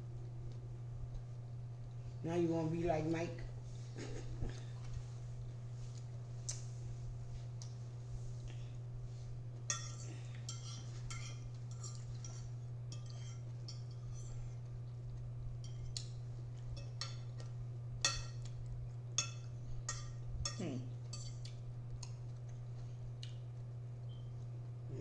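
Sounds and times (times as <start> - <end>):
steady low hum: 0.0 - 25.0
fork clinking on a dish: 9.7 - 14.5, 15.6 - 18.6, 19.2 - 22.2.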